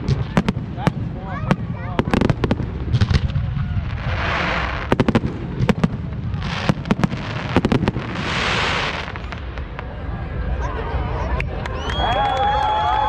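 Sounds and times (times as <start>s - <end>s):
fireworks bangs and cracks: 0.0s - 10.2s
crackling fizz of fireworks: 0.0s - 13.0s.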